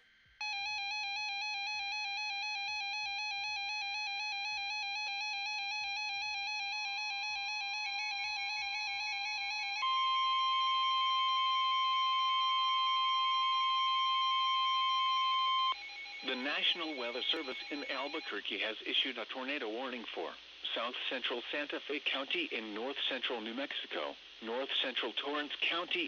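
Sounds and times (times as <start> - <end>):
warbling alarm tone: 6.6 - 18.4.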